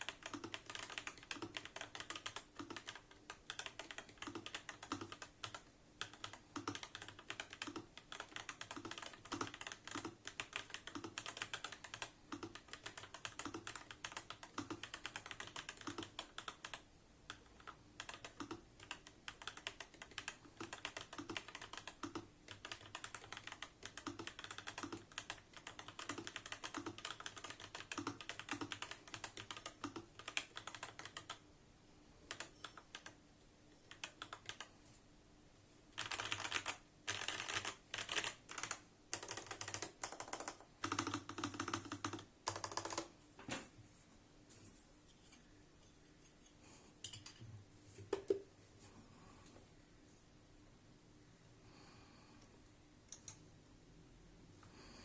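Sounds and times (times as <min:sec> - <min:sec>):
mechanical keyboard typing: 0:00.0 - 0:31.4, 0:32.3 - 0:33.2, 0:33.9 - 0:34.7, 0:36.0 - 0:43.1.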